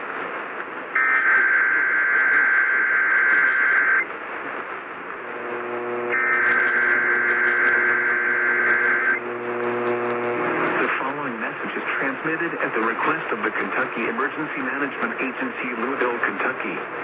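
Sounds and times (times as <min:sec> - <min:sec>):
radio static: 0:00.8 - 0:17.0
low buzz: 0:05.1 - 0:10.9.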